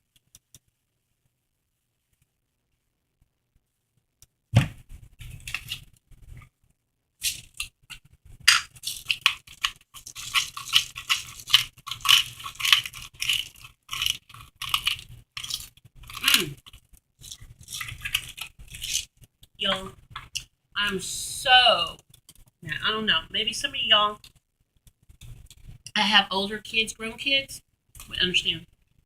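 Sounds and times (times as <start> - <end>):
crunching tortilla chips: 5.2 - 5.9, 7.2 - 19.6.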